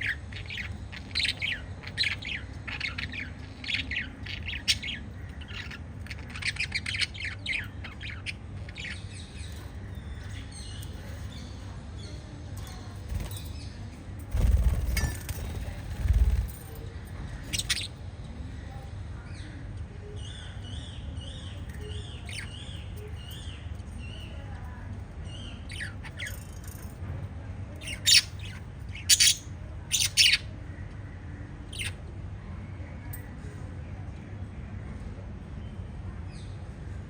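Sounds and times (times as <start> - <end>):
parrots chirping: 0.0 - 11.3, 17.3 - 18.0, 25.4 - 26.7, 27.8 - 30.5, 31.7 - 32.0
parrots squawking: 17.4 - 18.0, 27.9 - 30.5, 31.7 - 32.0.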